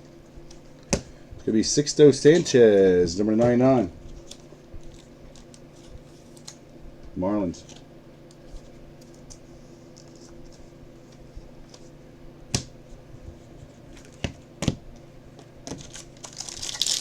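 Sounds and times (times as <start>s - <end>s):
foil wrapper crinkling: 15.7s - 17.0s.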